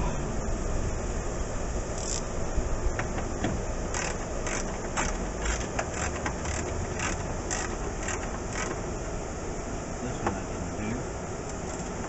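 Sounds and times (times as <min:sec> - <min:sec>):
ratchet wrench clicking: 0:02.0 - 0:02.3, 0:03.9 - 0:08.8.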